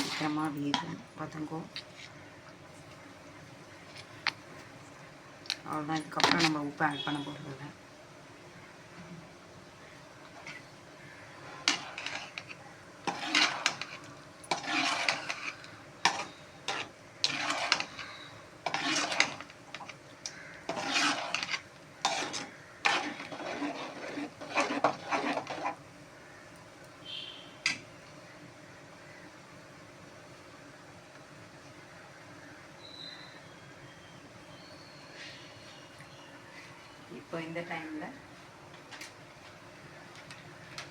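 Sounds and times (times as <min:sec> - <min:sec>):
spoon scraping a pan: 0:00.0 - 0:02.3, 0:05.5 - 0:07.6, 0:10.2 - 0:25.8, 0:27.6 - 0:27.8.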